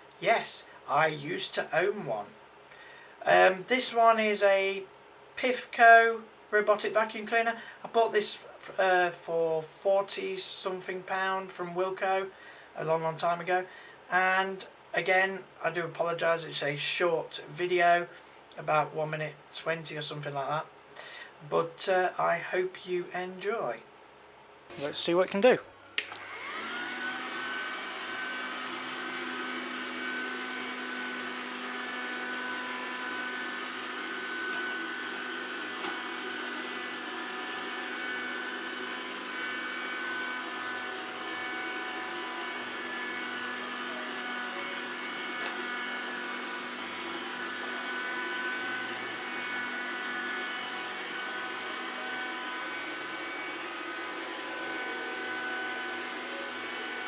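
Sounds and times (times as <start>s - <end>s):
robotic vacuum cleaner running: 26.1s - 57.0s.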